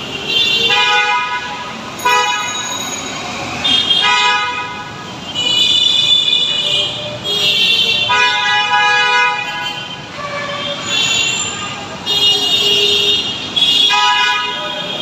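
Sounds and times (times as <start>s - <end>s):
vehicle horns honking: 0.0s - 3.0s, 3.6s - 15.0s
road traffic noise: 0.0s - 15.0s.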